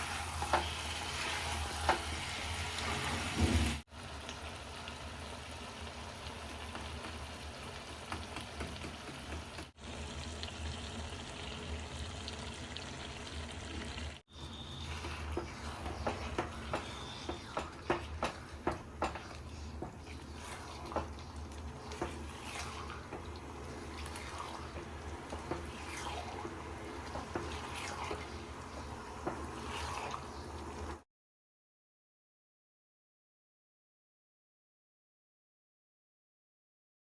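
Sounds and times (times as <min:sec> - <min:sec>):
food sizzling and bubbling: 0:00.0 - 0:31.0
spoon knocking against pan: 0:15.4 - 0:20.0.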